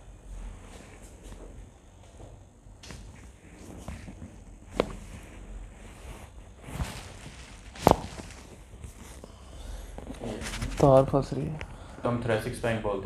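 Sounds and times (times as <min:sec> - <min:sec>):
body shuffling on table: 0:02.2 - 0:11.4
soft thud: 0:06.7 - 0:09.2.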